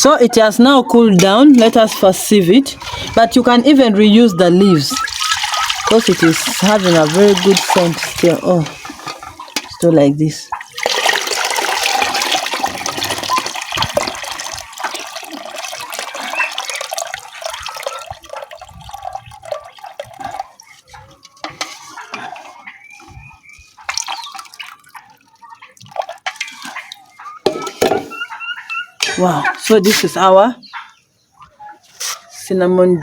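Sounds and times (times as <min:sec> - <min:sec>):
liquid dripping: 0:04.8 - 0:09.8, 0:10.5 - 0:27.7
liquid pouring through a sieve: 0:04.9 - 0:09.7, 0:10.6 - 0:22.6, 0:23.8 - 0:27.7
containers knocking: 0:27.4 - 0:28.2.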